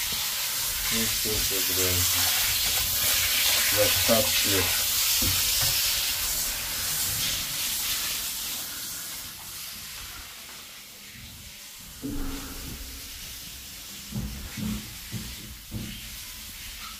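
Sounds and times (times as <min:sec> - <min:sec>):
hiss: 0:00.0 - 0:16.9
short low knocks: 0:12.0 - 0:13.6
washing machine drum running: 0:12.0 - 0:16.7.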